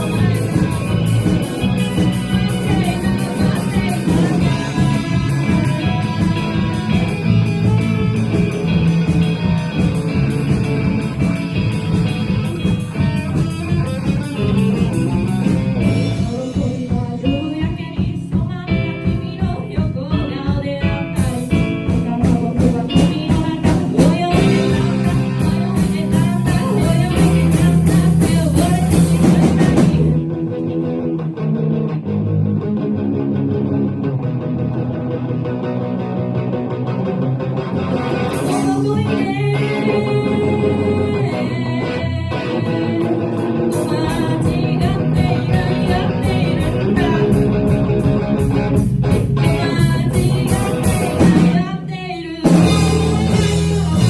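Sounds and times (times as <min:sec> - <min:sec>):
drum kit and cymbals: 0:00.0 - 0:17.4, 0:43.4 - 0:51.7, 0:52.4 - 0:54.0
person singing: 0:00.0 - 0:31.2, 0:37.7 - 0:54.0
bass guitar: 0:00.0 - 0:54.0
electric guitars: 0:00.0 - 0:54.0.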